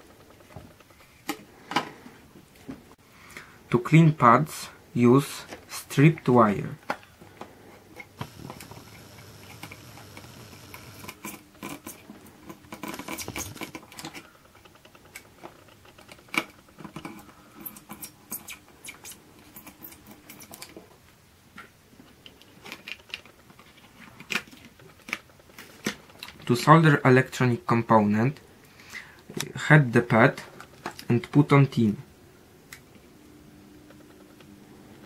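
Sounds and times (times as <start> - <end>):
faint steady whine: 0.0 - 15.7.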